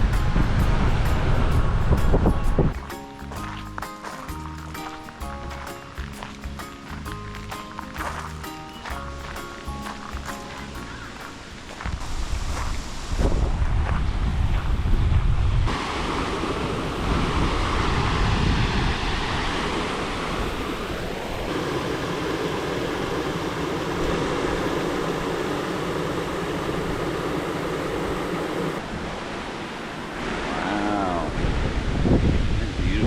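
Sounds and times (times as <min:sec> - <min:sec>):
wind buffeting microphone: 0:00.0 - 0:29.2, 0:31.3 - 0:33.0
waterfall water rushing: 0:15.7 - 0:32.1.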